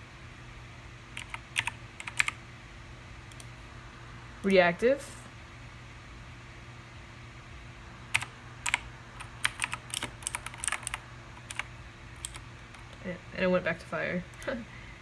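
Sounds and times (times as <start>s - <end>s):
mechanical keyboard key clicks: 9.4s - 11.6s.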